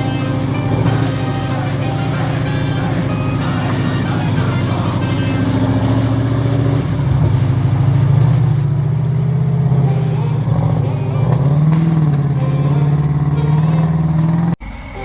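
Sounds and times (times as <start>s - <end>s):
engine running under load: 0.0s - 15.0s.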